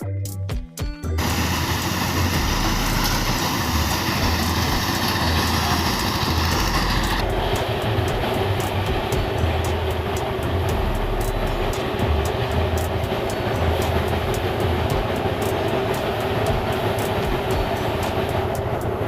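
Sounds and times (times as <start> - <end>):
machine droning: 1.2 - 19.0
faint rapid ticking: 6.5 - 19.0.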